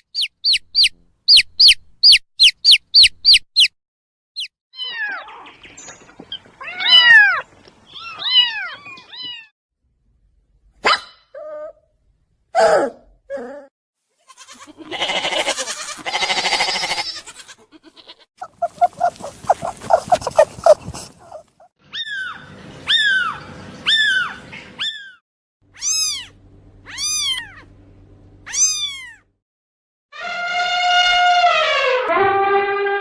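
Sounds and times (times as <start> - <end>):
cat meowing: 8.0 - 9.5, 26.9 - 27.6, 28.5 - 29.2
cat chattering: 18.4 - 21.7
cat hissing: 18.4 - 21.7.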